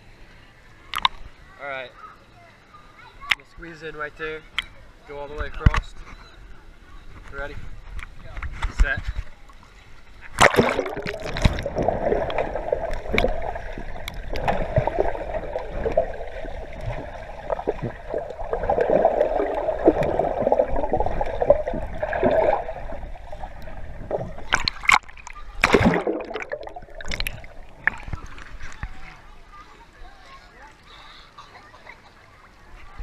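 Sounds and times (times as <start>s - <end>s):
water splashing: 9.4s - 29.6s
muffled underwater gurgling: 10.4s - 29.0s.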